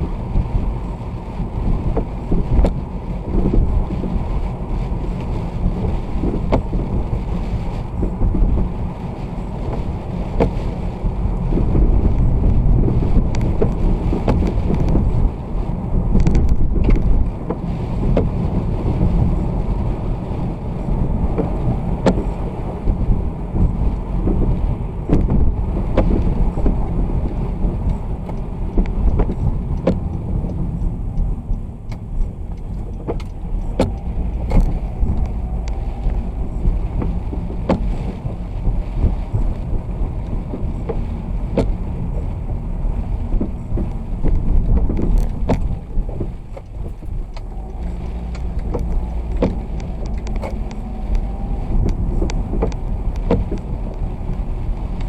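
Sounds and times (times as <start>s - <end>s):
vehicle road noise rumble: 0.0s - 55.0s
wind buffeting microphone: 0.0s - 55.0s
light ticks: 13.1s - 15.4s, 25.9s - 38.4s, 43.3s - 55.0s.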